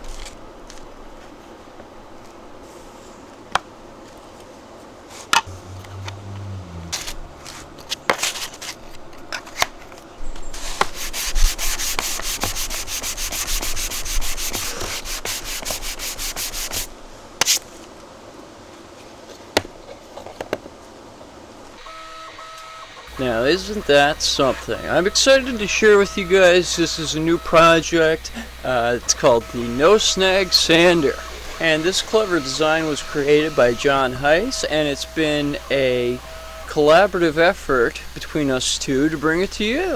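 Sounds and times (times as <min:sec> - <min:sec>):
sandpaper rubbing back and forth: 0:05.1 - 0:09.7, 0:10.4 - 0:17.8, 0:23.1 - 0:39.9.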